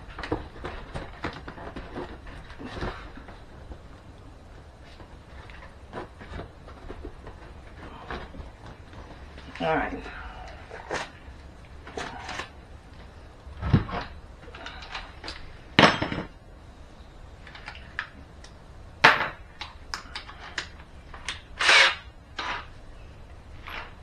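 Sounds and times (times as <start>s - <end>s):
knocks and clunks of wood and tools: 13.6s - 16.4s.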